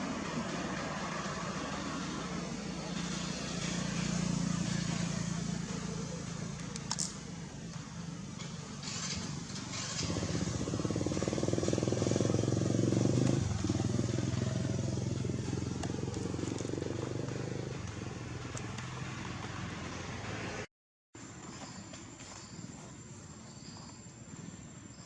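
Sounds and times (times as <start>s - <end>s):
motor engine running: 0.0s - 20.6s.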